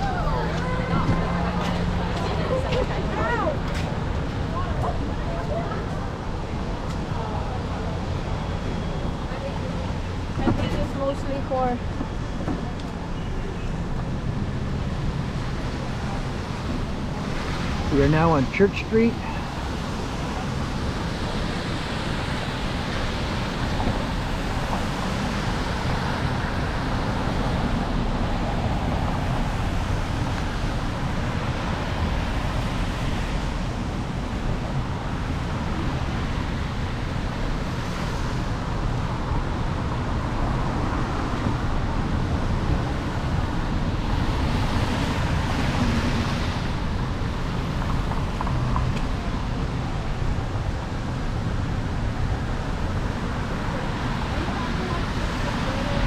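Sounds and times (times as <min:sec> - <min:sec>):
cars swishing past: 0:00.0 - 0:06.1
traffic on wet road: 0:00.0 - 0:56.0.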